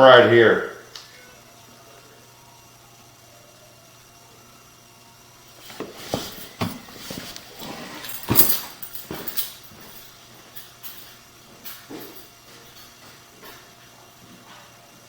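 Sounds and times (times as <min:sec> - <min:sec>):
knocks and clattering rustle: 0:05.6 - 0:14.7.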